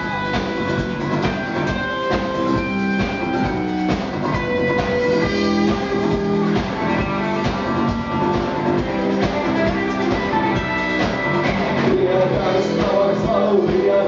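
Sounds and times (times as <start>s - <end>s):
drum kit beat: 0.0s - 14.0s
electric guitars and bass: 0.0s - 14.0s.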